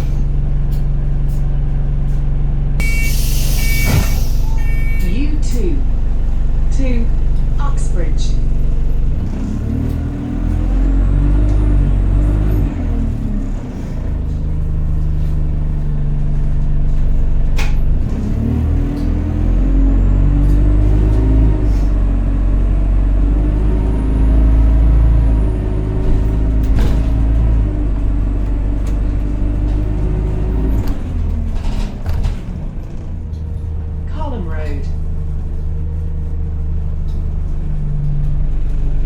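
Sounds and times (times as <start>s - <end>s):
bus engine drone: 0.0s - 39.0s
faint high whine: 2.8s - 5.2s.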